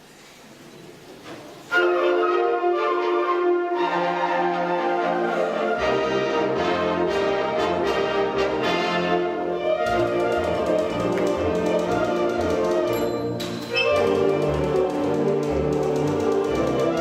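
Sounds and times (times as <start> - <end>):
wind ensemble playing: 1.7 - 17.0
brass chords: 5.3 - 15.7.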